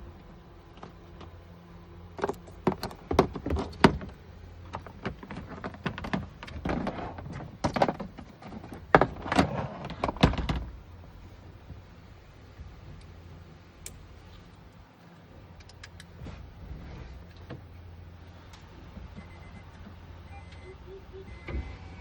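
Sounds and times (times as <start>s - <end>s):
knocks clicks and scrapes on car door: 2.2s - 4.2s.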